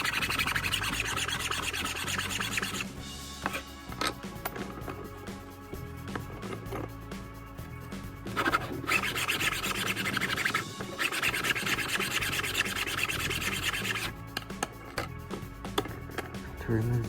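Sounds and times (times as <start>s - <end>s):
scratchy rubbing on wood: 0.0s - 3.6s, 8.2s - 14.8s
faint background music: 0.0s - 17.0s.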